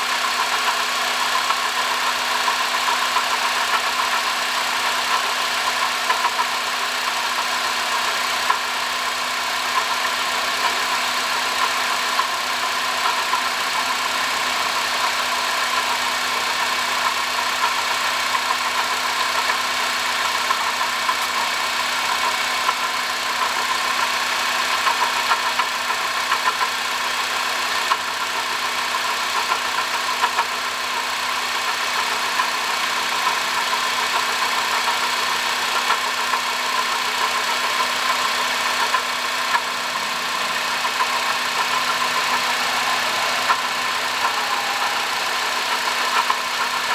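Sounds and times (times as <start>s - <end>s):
car engine running: 0.0s - 46.9s.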